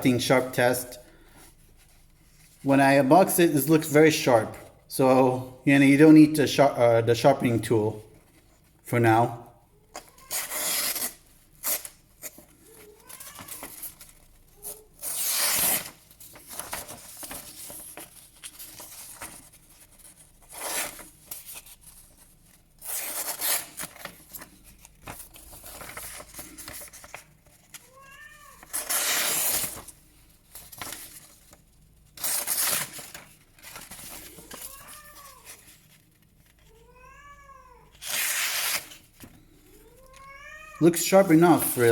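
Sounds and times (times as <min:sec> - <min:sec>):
paper rustling: 0:10.0 - 0:36.8, 0:40.9 - 0:41.9
knife slicing paper: 0:38.0 - 0:39.0.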